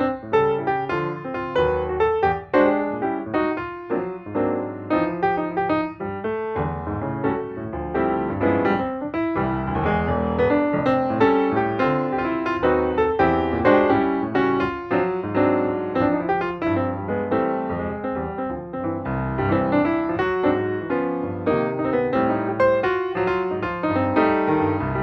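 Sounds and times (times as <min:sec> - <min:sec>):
instrumental music: 0:00.0 - 0:25.0.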